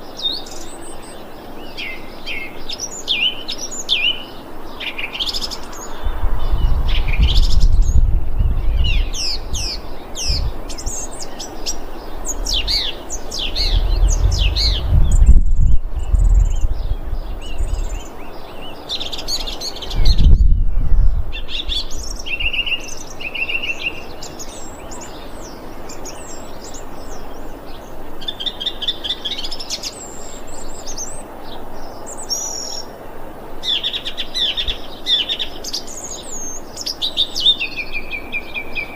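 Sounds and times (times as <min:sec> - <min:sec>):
thrush singing: 0:09.8 - 0:16.3
low rumble: 0:12.3 - 0:17.9.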